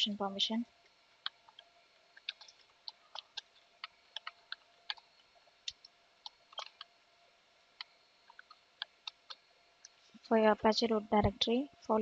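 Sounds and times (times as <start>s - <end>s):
keyboard typing clicks: 1.3s - 5.1s, 5.7s - 6.9s.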